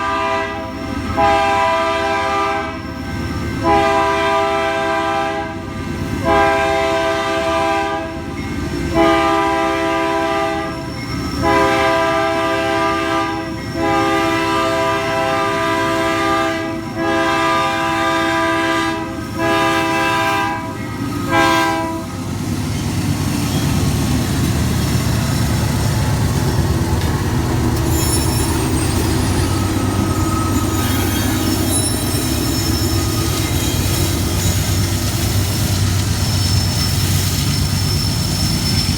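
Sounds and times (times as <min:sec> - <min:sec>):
locomotive air horn blasts: 0:00.0 - 0:02.8, 0:03.6 - 0:08.2, 0:08.9 - 0:22.2.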